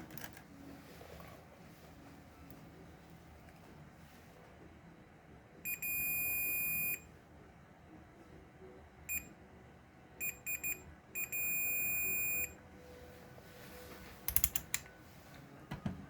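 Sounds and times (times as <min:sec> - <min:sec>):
knock: 0:15.7 - 0:16.0.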